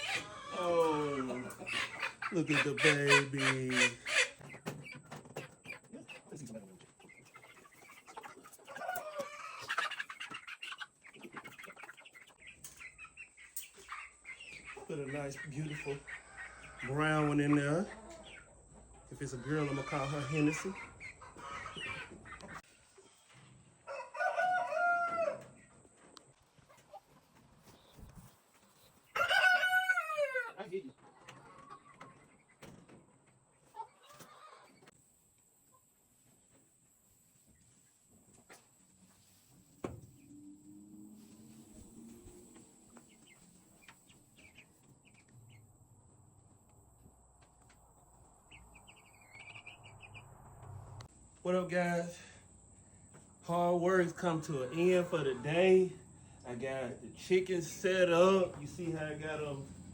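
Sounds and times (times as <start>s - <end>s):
faint chicken sounds: 0.0s - 59.9s
rooster crowing: 23.8s - 25.6s, 29.1s - 30.5s.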